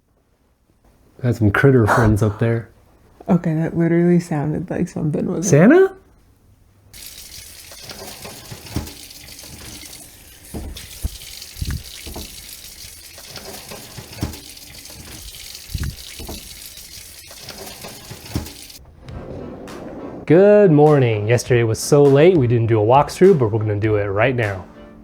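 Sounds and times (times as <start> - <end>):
running water rushing: 7.0 - 18.8.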